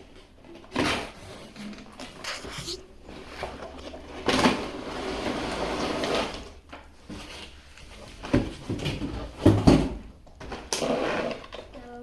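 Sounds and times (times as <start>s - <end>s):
cardboard scraping and rustling: 0.7s - 6.5s.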